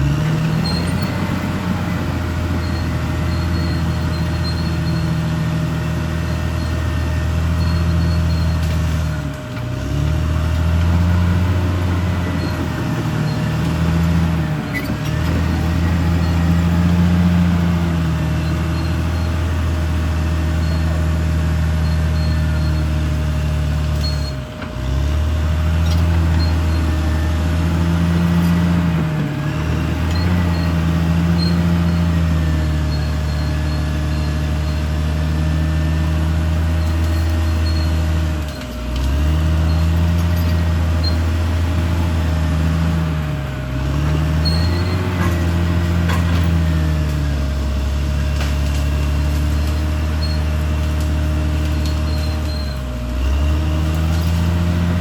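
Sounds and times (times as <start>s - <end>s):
bulldozer diesel engine running hard: 0.0s - 55.0s.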